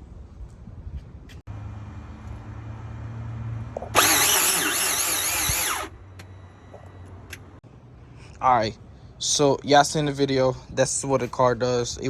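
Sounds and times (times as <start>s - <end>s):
starter motor cranking engine: 3.9s - 5.9s.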